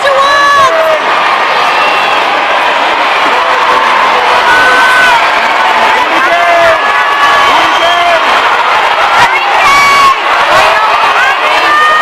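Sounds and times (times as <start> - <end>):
crowd cheering: 0.0 - 12.0
shrill high screams: 6.2 - 12.0.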